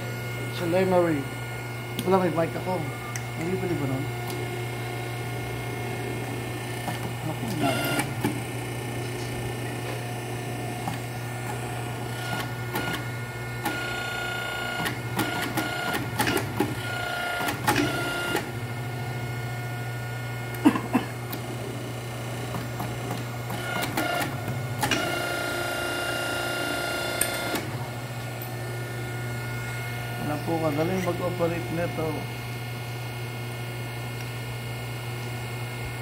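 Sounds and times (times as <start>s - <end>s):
high-pitched machine whine: 0.0s - 21.1s, 23.6s - 32.8s
crimping machine motor hum: 0.0s - 36.0s.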